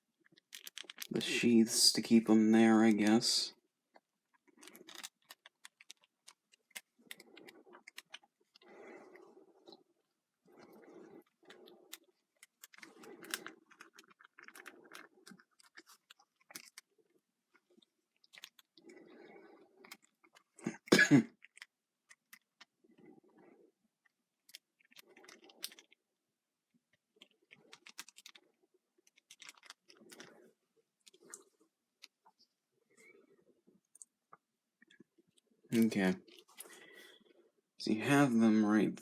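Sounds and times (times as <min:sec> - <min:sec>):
plastic parts clicking: 0:00.3 - 0:01.2, 0:04.5 - 0:08.2.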